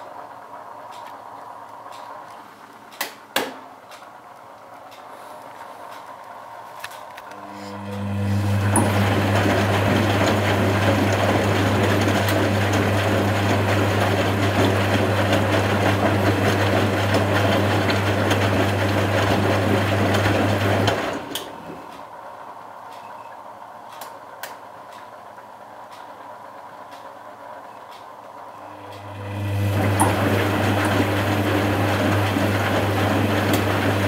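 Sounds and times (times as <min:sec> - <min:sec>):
drain pump humming: 0:07.3 - 0:22.6, 0:28.6 - 0:34.0.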